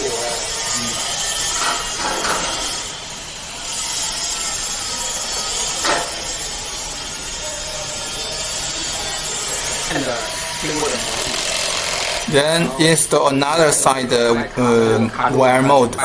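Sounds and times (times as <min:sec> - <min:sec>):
machine hiss: 0:00.0 - 0:14.0
metal scrapes and knocks: 0:01.2 - 0:03.0, 0:05.2 - 0:06.4.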